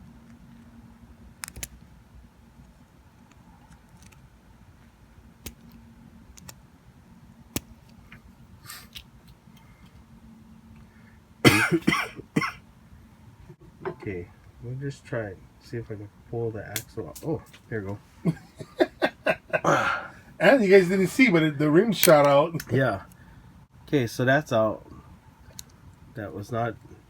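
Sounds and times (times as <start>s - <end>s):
low steady hum: 0.0s - 27.0s
loud cough: 11.4s - 12.6s, 18.3s - 20.1s.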